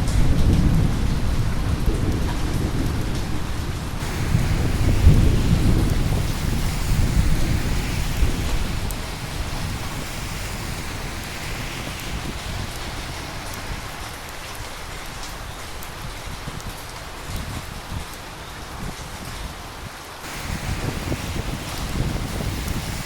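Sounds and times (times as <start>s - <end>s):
thunder rumbling: 0.0s - 19.6s, 20.2s - 23.0s
steady rain: 0.0s - 23.0s.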